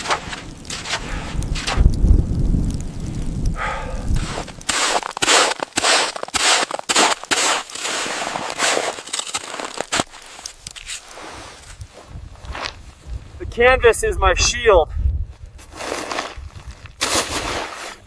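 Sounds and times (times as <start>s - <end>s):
footsteps crunching in snow: 0.0s - 1.9s, 4.2s - 13.3s, 15.3s - 18.0s
low rumble: 0.6s - 4.7s.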